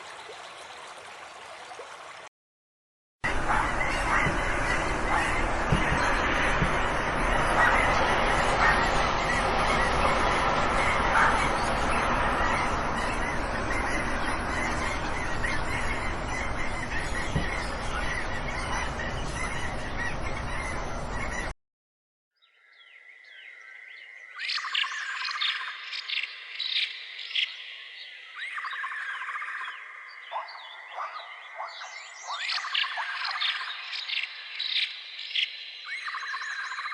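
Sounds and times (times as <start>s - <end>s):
steady noisy background: 3.2s - 21.5s
flock of birds calling: 3.3s - 21.5s
small birds chirping: 3.3s - 21.5s.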